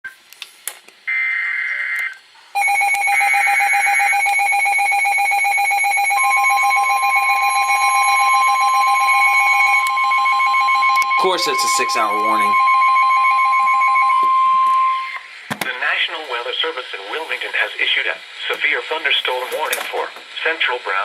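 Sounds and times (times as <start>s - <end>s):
warbling digital data tones: 1.4s - 15.3s
pulsing alarm buzz: 2.6s - 15.3s
steady warning alarm tone: 2.6s - 15.3s.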